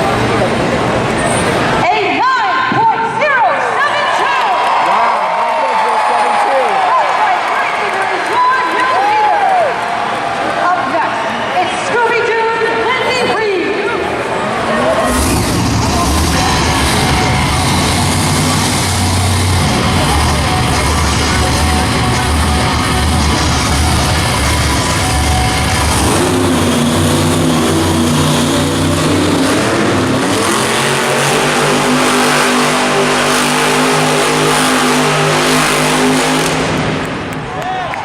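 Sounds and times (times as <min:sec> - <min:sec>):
truck engine revving: 0:00.0 - 0:01.8, 0:14.1 - 0:37.6.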